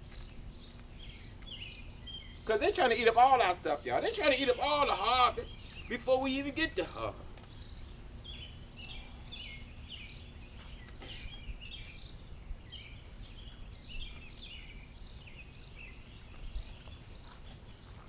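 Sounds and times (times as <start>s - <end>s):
low outdoor rumble: 0.0s - 10.6s
songbirds chirping: 0.0s - 18.0s.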